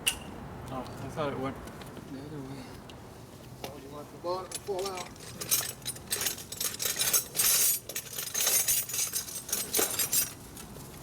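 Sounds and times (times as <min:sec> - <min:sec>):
metal parts and tools clinking: 0:04.5 - 0:10.7.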